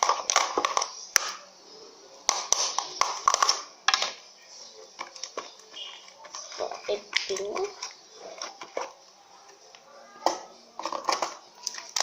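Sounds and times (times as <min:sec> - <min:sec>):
slime stirred in plastic pot: 0:04.8 - 0:09.7.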